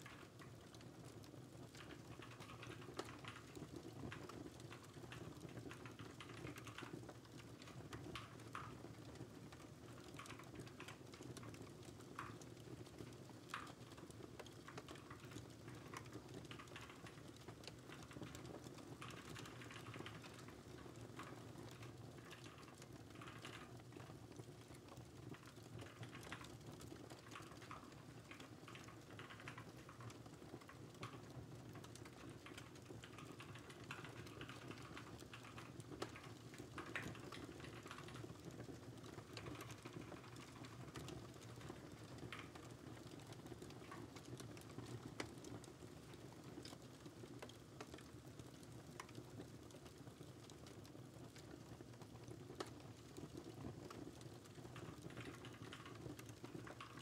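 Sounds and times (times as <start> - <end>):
fire crackling pops: 0.0 - 57.0
fireplace rumble: 9.4 - 52.7.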